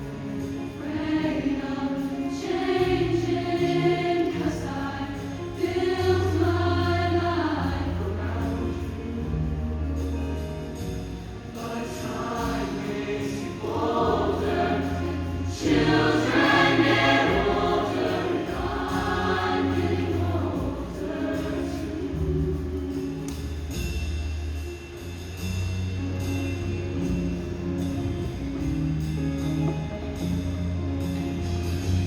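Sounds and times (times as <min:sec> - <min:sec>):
choir singing sustained chords: 0:00.0 - 0:25.1.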